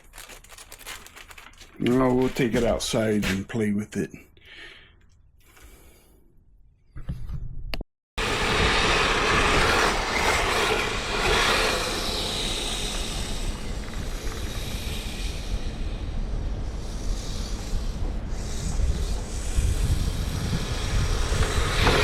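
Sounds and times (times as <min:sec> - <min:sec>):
wind buffeting microphone: 0:08.2 - 0:22.0.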